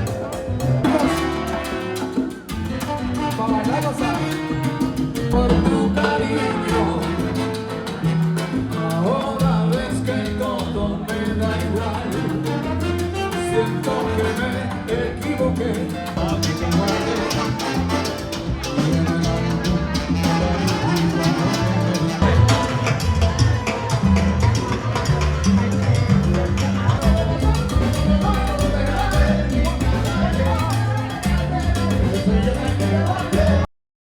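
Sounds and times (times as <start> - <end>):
live band playing latin music: 0.0 - 33.7
person singing: 5.2 - 7.5, 13.3 - 33.7.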